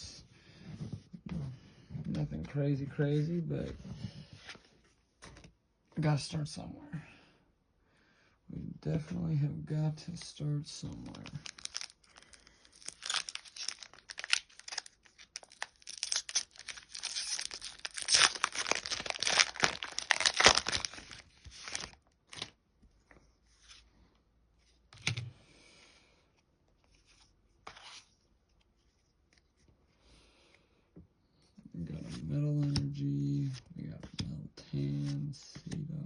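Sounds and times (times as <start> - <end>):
foil wrapper tearing and crinkling: 11.2 - 22.5.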